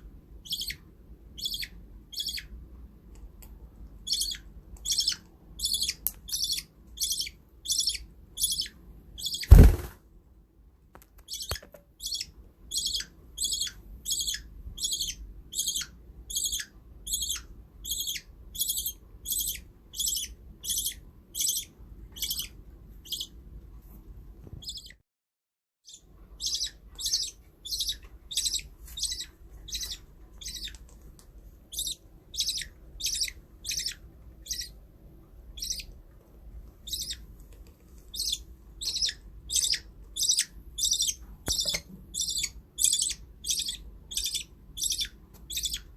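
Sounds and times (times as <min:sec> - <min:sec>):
budgerigar chirping: 0:00.4 - 0:00.8, 0:01.4 - 0:02.5, 0:04.0 - 0:09.8, 0:11.3 - 0:23.4, 0:24.6 - 0:25.0, 0:25.9 - 0:30.8, 0:31.7 - 0:34.8, 0:35.5 - 0:35.9, 0:36.8 - 0:37.2, 0:38.1 - 0:45.9.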